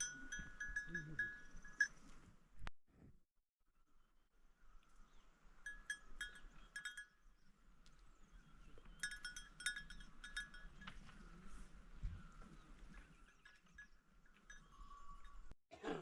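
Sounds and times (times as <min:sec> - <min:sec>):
faint livestock bells clinking: 0:00.0 - 0:02.2, 0:05.6 - 0:07.5, 0:08.3 - 0:15.6.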